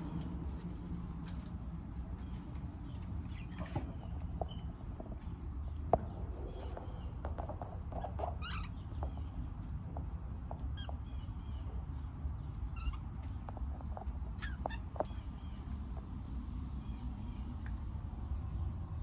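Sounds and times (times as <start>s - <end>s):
steady low rumble: 0.0s - 14.4s
birds chirping: 2.1s - 17.7s.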